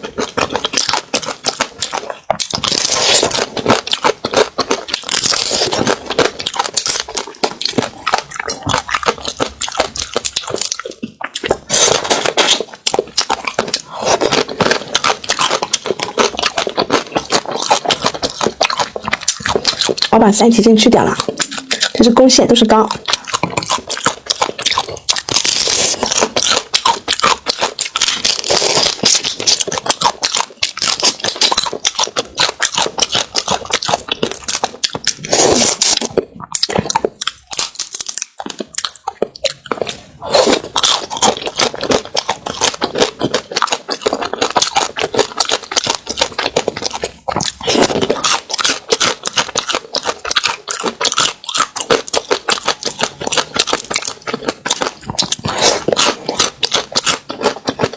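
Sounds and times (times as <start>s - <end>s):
crab shell crunching: 0.0s - 57.9s
wet chewing: 0.0s - 57.9s.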